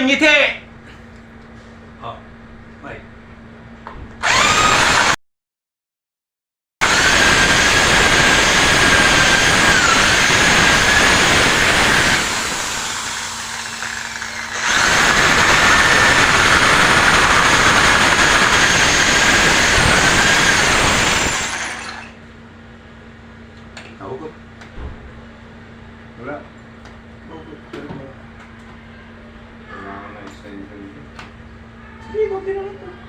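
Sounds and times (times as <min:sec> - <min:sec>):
power drill whining: 0:04.2 - 0:05.2, 0:06.8 - 0:22.2.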